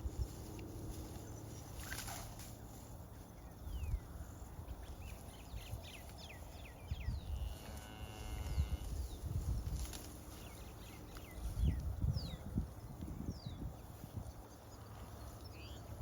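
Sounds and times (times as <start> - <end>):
cow mooing: 7.4 - 8.8.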